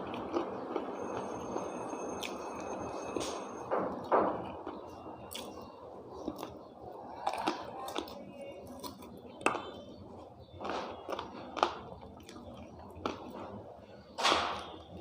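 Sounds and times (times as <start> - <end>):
person chewing food: 0.0 - 1.6, 4.4 - 13.7.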